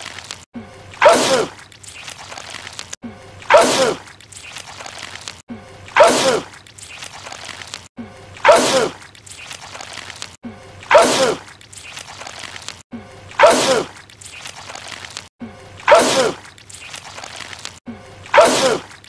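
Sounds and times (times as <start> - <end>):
man sneezing: 8.4 - 9.0, 10.9 - 11.4, 18.3 - 18.9.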